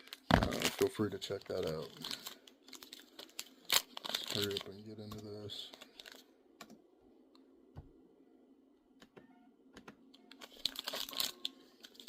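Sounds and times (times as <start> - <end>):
foil wrapper crinkling: 0.0 - 6.2, 10.3 - 12.0.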